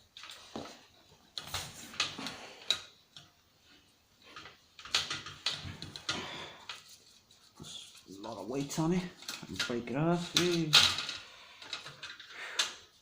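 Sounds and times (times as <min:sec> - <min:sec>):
hand tool clicking and scraping: 0:04.3 - 0:12.9.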